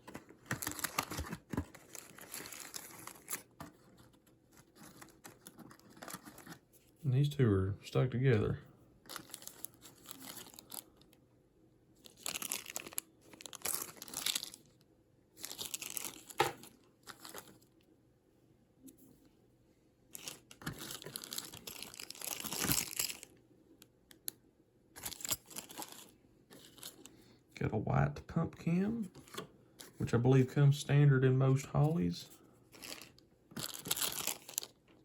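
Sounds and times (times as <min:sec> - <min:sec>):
plastic packaging crinkling and tearing: 0:00.0 - 0:06.6, 0:09.1 - 0:11.1, 0:12.0 - 0:14.8, 0:15.4 - 0:17.7, 0:20.1 - 0:23.4, 0:25.0 - 0:27.1, 0:32.7 - 0:35.0.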